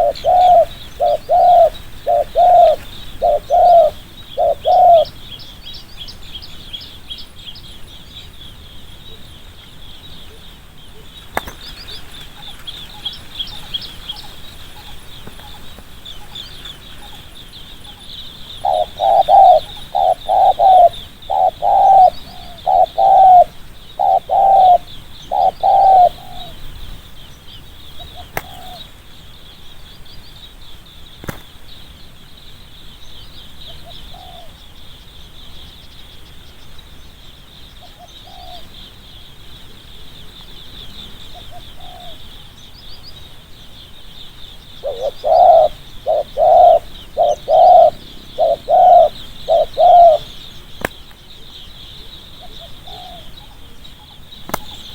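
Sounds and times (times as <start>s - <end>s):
dove cooing: 0.0s - 5.2s, 11.9s - 26.8s, 41.3s - 42.5s, 44.8s - 54.8s.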